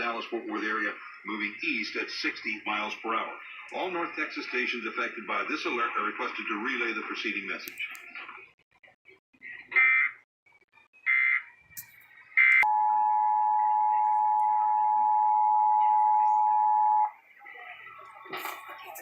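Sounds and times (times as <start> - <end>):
two-tone attention signal: 12.6 - 17.2.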